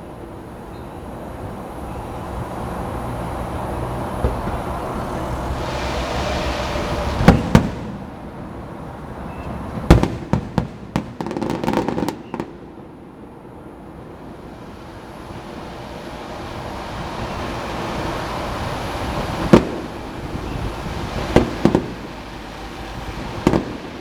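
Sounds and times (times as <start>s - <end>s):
firework crackling: 0.0s - 24.0s
firework rushing hiss: 0.0s - 24.0s
loud firework bangs: 4.1s - 14.2s, 16.9s - 24.0s.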